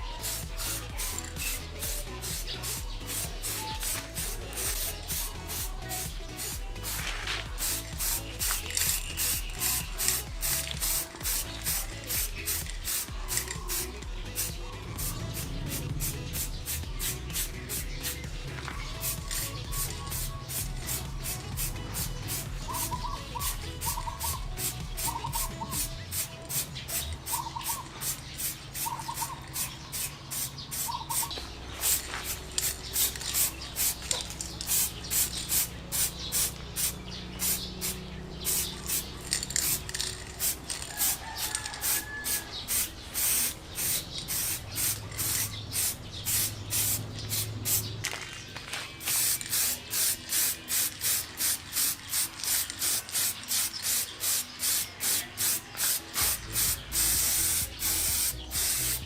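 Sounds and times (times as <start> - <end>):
spray paint hissing bursts: 0.0 - 48.1, 49.0 - 59.0
roosters crowing: 30.4 - 45.5.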